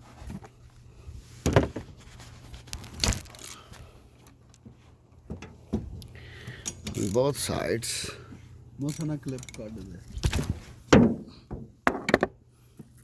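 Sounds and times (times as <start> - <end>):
low steady hum: 0.0 - 13.0
ratchet clicking: 8.8 - 9.7
ratchet metal knocks: 8.8 - 9.8.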